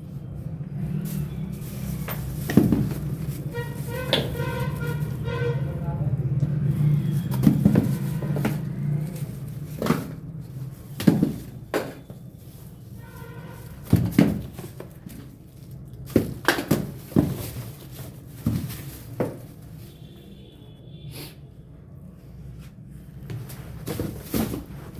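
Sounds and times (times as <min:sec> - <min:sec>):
containers knocking: 0:02.0 - 0:05.4.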